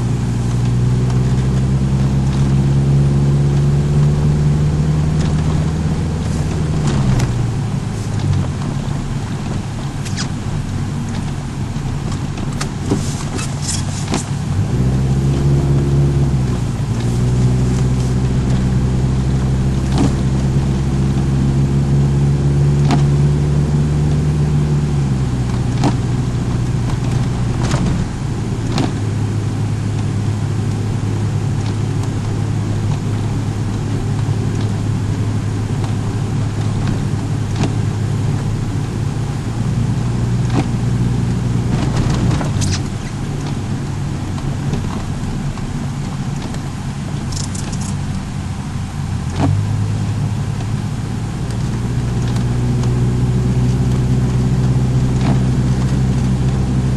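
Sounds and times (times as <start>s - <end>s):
car engine running: 0.0s - 56.9s
sharp clicks and knocks: 22.8s - 23.2s, 25.4s - 26.1s, 26.9s - 29.1s, 36.6s - 37.8s, 40.4s - 40.8s, 41.7s - 43.6s, 44.4s - 48.2s, 49.2s - 49.6s.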